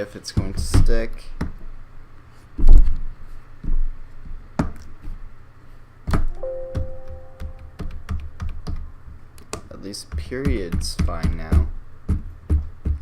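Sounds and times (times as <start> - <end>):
keyboard keys clicking: 6.3 - 8.9
electronic tone: 6.4 - 7.8.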